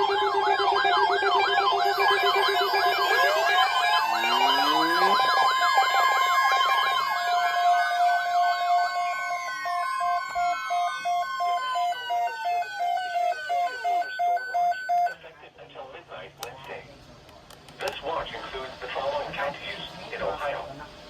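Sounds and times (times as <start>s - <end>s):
pulsing beeping tone: 0.0s - 15.2s
siren wailing: 0.0s - 15.2s.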